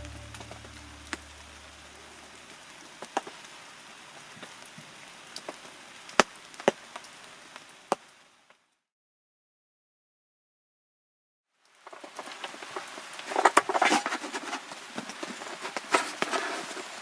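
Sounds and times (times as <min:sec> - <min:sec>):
background music: 0:00.0 - 0:01.9
light rain hissing: 0:00.0 - 0:08.6, 0:11.5 - 0:17.0.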